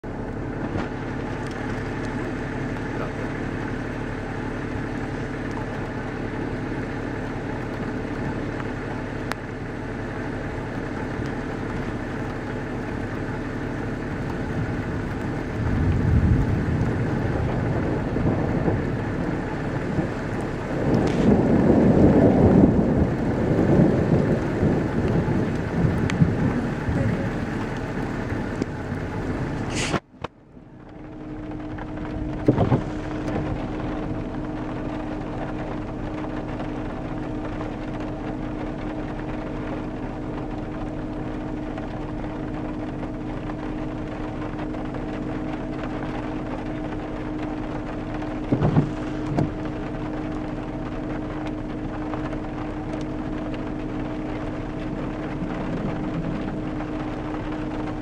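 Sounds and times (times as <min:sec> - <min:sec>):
steady rain: 0:00.0 - 0:58.0
rolling thunder: 0:14.4 - 0:29.6, 0:31.4 - 0:37.0, 0:47.9 - 0:58.0.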